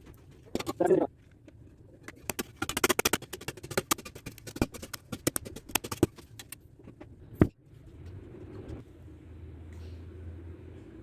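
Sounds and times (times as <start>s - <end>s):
birds clicking and tapping: 2.1s - 6.6s.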